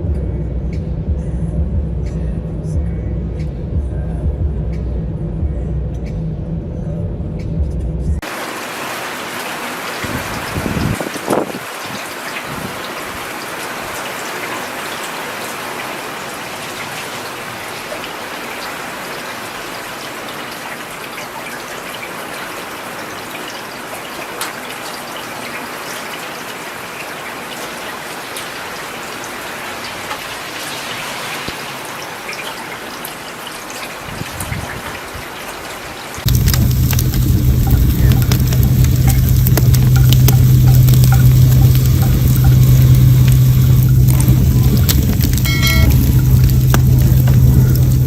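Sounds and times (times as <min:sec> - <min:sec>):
steady rain falling: 0:08.2 - 0:48.0
wood fire crackling: 0:36.2 - 0:48.0.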